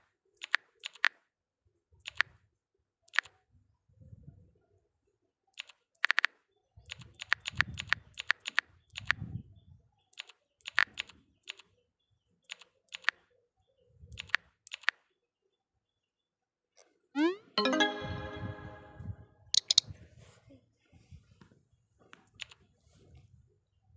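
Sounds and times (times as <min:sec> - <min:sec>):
sharp clicks and taps: 0:19.6 - 0:19.8.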